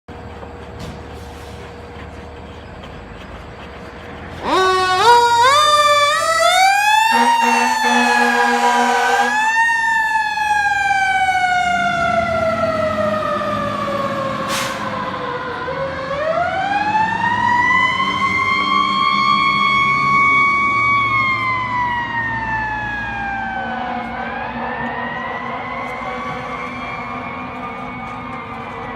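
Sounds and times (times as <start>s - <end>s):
air horn blast: 4.4s - 6.2s, 7.0s - 9.6s.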